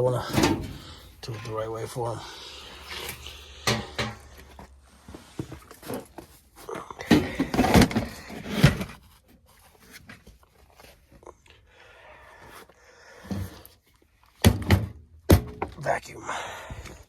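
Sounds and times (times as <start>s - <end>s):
equipment knocking and clattering: 3.6s - 4.6s.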